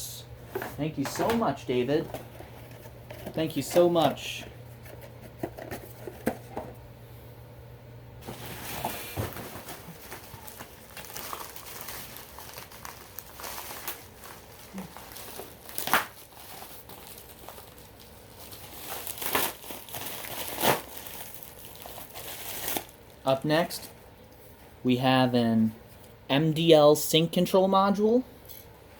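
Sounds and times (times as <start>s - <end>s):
packaging crinkling: 8.2s - 23.8s.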